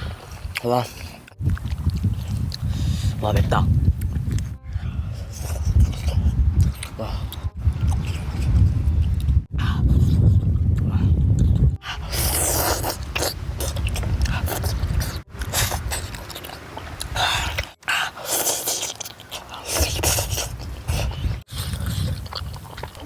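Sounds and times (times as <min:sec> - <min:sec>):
person chewing and biting: 0:00.4 - 0:03.0, 0:07.8 - 0:23.0.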